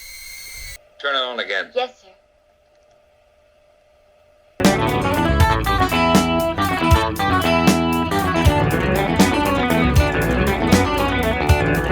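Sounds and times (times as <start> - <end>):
electric guitar rock music: 4.6 - 11.9.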